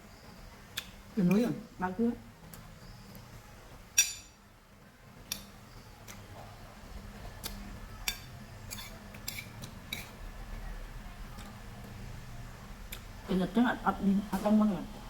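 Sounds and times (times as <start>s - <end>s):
utensils clinking against dishes: 4.0s - 4.4s, 8.0s - 10.2s.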